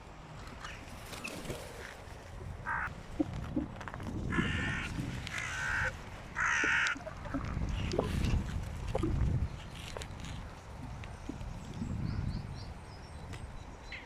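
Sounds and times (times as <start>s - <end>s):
crows cawing: 2.6s - 2.9s, 4.3s - 7.0s.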